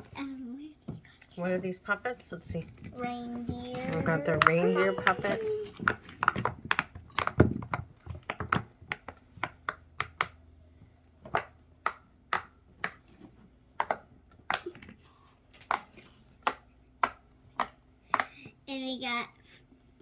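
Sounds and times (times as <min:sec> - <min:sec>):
toys and packaging clicking: 0:02.8 - 0:10.4, 0:13.8 - 0:18.5.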